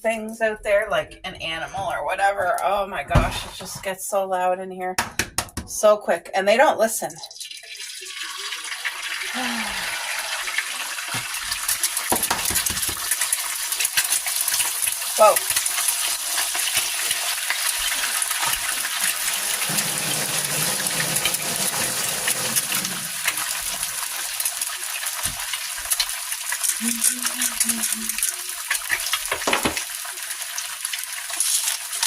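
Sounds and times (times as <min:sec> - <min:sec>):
eggs sizzling in a pan: 0:07.3 - 0:32.0.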